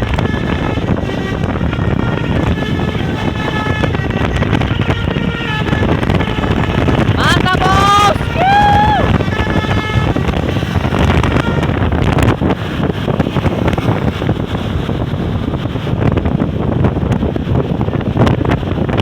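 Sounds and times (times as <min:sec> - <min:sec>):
traffic noise: 0:00.0 - 0:18.8
bus engine rumbling: 0:00.0 - 0:18.9
wind buffeting microphone: 0:00.0 - 0:19.0
bus horn tones: 0:00.1 - 0:13.0.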